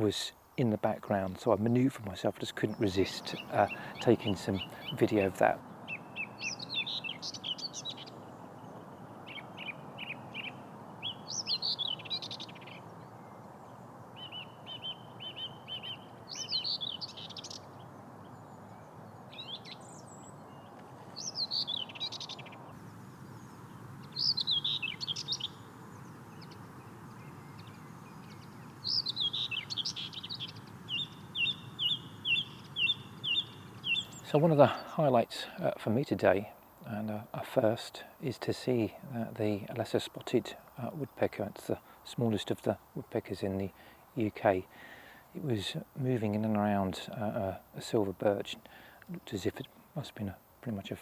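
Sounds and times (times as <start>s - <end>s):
bird singing scratchy warbles: 0.0s - 8.2s, 19.4s - 44.6s
steady outdoor hiss: 0.0s - 51.0s.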